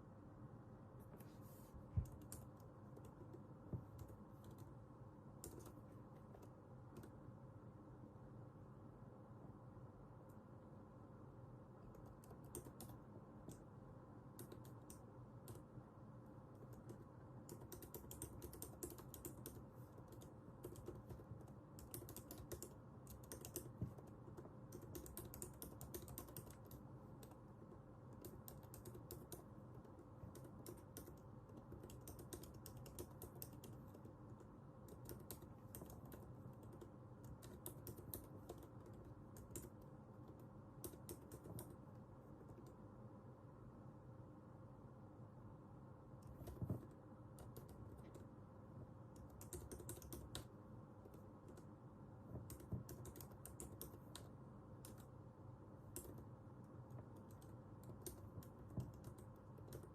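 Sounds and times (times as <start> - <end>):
low room hum: 0.0 - 59.9
keyboard typing: 2.0 - 7.2, 11.8 - 13.7, 14.3 - 15.8, 16.4 - 42.9, 46.2 - 48.4, 49.1 - 55.2, 55.8 - 59.9.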